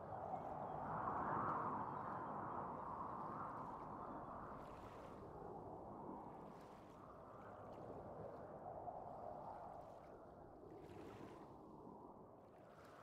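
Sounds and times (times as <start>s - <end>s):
small waves lapping at shore: 9.6s - 13.0s.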